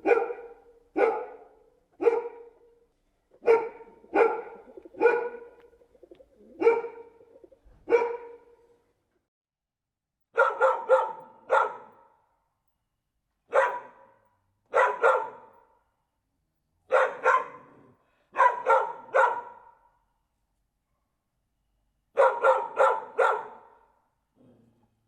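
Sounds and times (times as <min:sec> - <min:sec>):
dog barking: 0:00.0 - 0:05.6, 0:06.4 - 0:07.2, 0:07.8 - 0:08.7, 0:10.3 - 0:12.2, 0:13.5 - 0:15.8, 0:16.9 - 0:20.0, 0:22.1 - 0:24.0.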